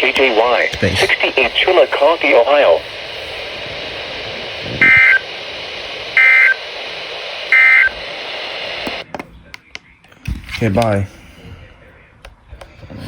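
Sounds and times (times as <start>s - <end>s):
radio hiss: 0.0s - 9.1s
warbling two-tone data bursts: 4.8s - 5.4s, 6.0s - 6.6s.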